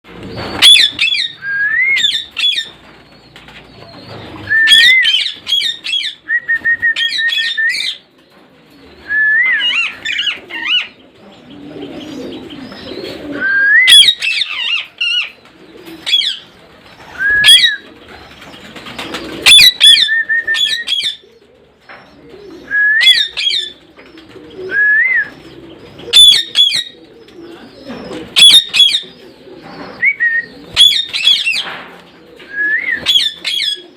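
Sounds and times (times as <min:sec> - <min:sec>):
parrots squawking: 0:00.5 - 0:01.4, 0:19.4 - 0:21.2, 0:26.1 - 0:27.0, 0:28.4 - 0:29.0.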